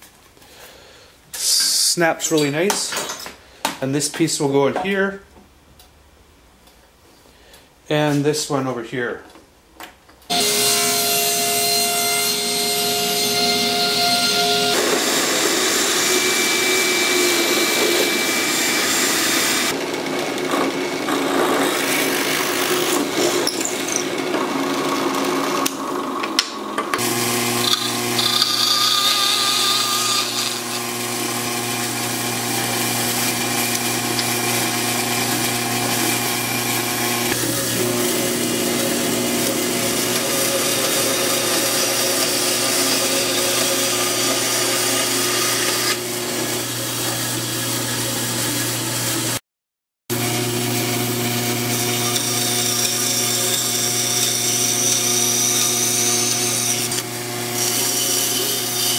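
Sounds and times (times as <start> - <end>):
woodworking power tools: 10.3 - 49.4, 50.1 - 58.9
power tool motor humming: 12.4 - 25.8, 27.0 - 48.8, 50.2 - 58.9.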